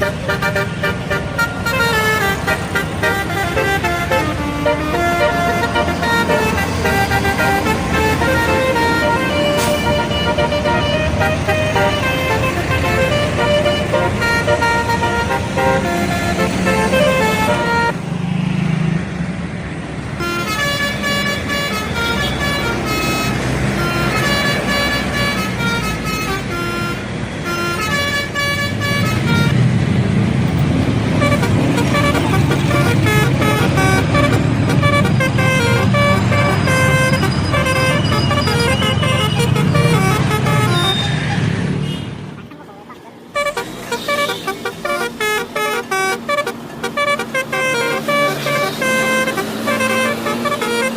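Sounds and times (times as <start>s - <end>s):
musical bus horn: 0.0s - 18.1s, 20.2s - 29.9s, 30.6s - 42.6s, 43.2s - 50.9s
bus engine running: 0.0s - 50.9s.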